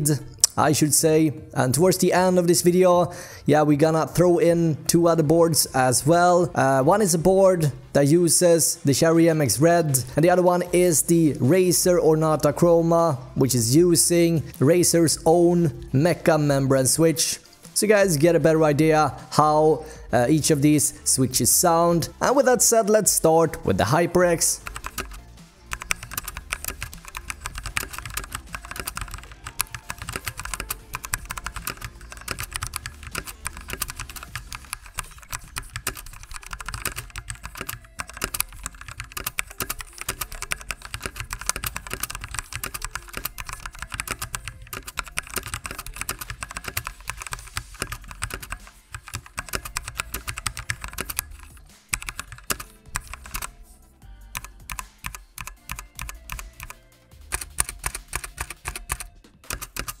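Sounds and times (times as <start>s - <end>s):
fast typing on mechanical keyboard: 24.5s - 53.6s, 54.3s - 60.0s.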